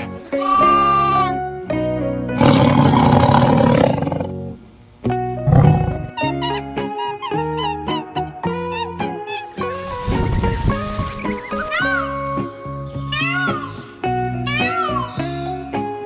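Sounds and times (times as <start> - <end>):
children's background music: 0.0 - 2.4, 5.7 - 16.0
big cat roaring: 2.4 - 4.4, 5.4 - 6.2
low growl: 5.4 - 6.2.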